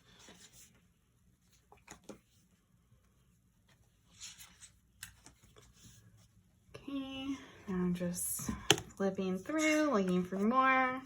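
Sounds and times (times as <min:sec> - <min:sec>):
paper rustling and scraping: 0:03.3 - 0:06.4.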